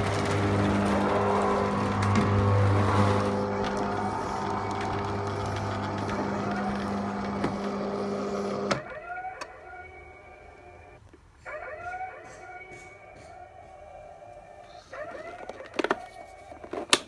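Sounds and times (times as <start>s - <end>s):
garage door clunk: 0.0s - 9.0s
garage door motor humming: 0.0s - 11.0s.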